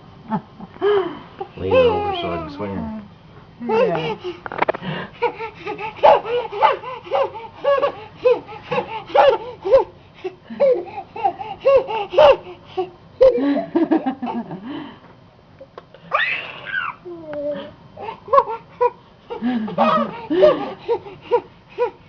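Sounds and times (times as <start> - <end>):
baby laughing: 1.7 - 2.7, 5.2 - 9.9.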